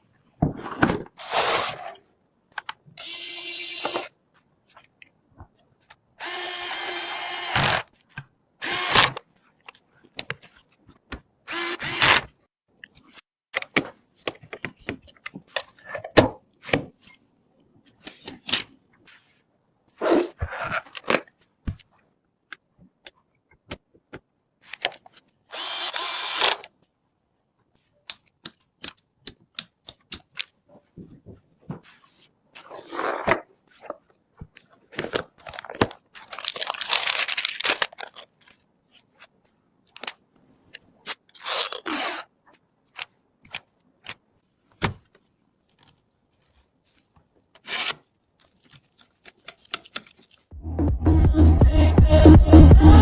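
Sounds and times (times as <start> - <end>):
electric screwdriver whirring: 3.0 - 4.1, 6.2 - 7.8, 8.6 - 9.1, 11.5 - 12.2, 25.5 - 26.6.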